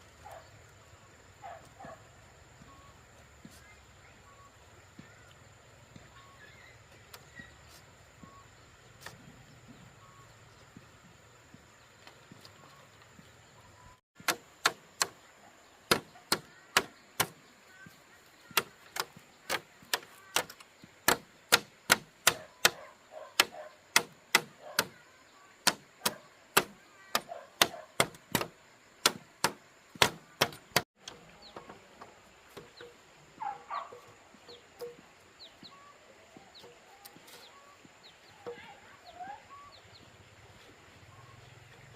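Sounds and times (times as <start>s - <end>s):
faint bird calls: 2.6s - 14.0s, 31.0s - 41.9s
sharp knocks: 15.9s - 17.4s, 18.6s - 22.8s, 23.4s - 25.0s, 25.6s - 30.8s.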